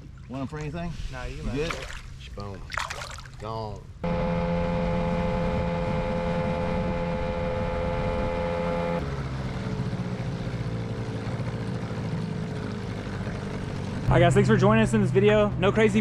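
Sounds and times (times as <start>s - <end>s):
outboard motor running: 4.0s - 16.0s.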